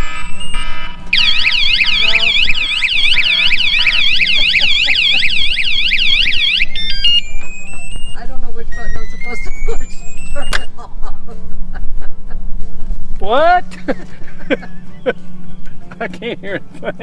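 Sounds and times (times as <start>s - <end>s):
stepped electronic beeping: 0.0s - 10.7s
warbling alarm siren: 0.0s - 10.7s.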